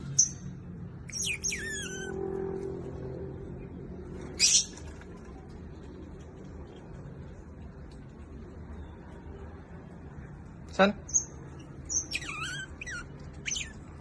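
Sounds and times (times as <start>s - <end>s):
otter squeaky chirps: 0.0s - 2.3s, 11.1s - 14.0s.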